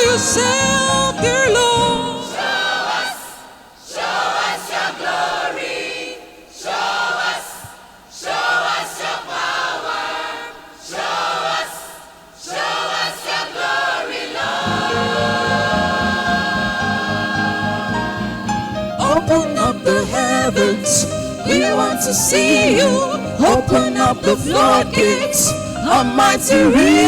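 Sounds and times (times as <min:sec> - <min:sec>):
gospel choir singing: 0:00.0 - 0:27.0
backing music with chords and bass: 0:14.5 - 0:21.7.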